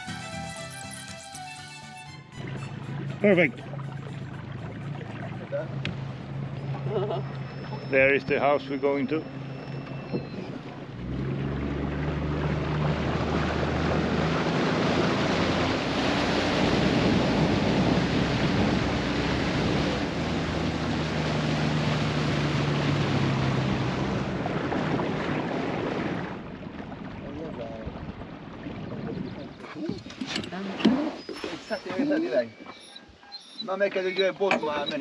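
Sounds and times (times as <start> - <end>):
water rushing: 0.0 - 27.6
motorboat engine hum: 0.0 - 35.0.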